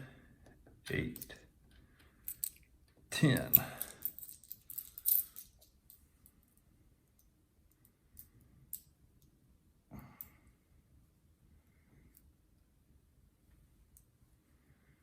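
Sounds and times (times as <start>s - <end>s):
coins clicking together: 3.5s - 5.7s.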